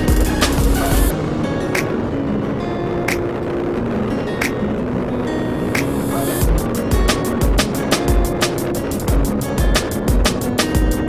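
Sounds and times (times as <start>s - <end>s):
music with drum beat: 0.0s - 1.1s, 5.8s - 11.0s.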